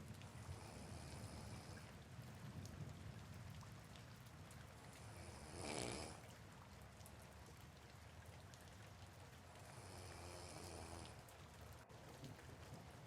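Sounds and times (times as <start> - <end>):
soft rain: 0.0 - 13.0
person breathing slowly in sleep: 0.4 - 1.9, 9.6 - 11.2.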